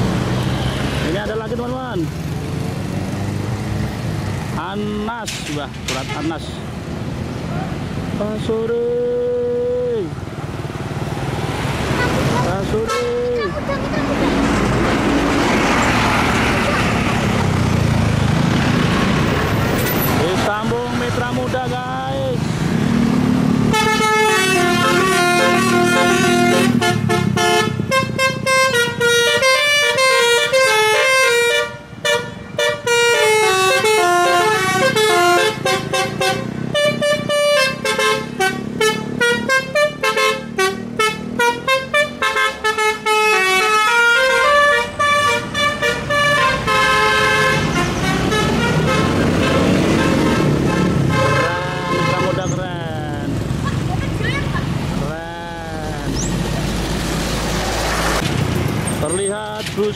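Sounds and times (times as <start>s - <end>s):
diesel engine running: 9.7s - 30.1s
musical bus air horn melody: 12.8s - 13.3s, 23.7s - 52.5s.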